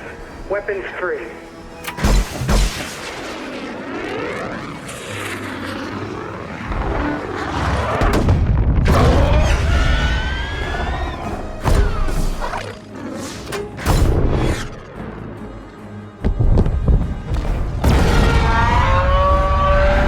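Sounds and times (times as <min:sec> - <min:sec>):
jets streaking past: 0:03.0 - 0:08.5.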